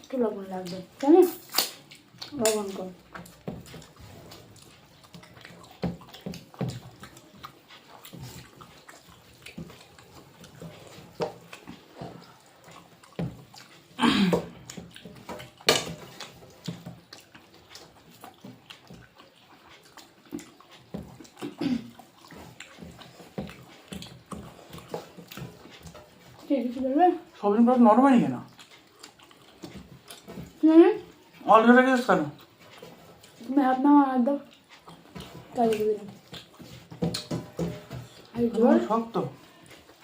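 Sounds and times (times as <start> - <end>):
food squelching being eaten by hand: 0.0 - 40.0
small clicks and taps on plate: 0.5 - 3.9.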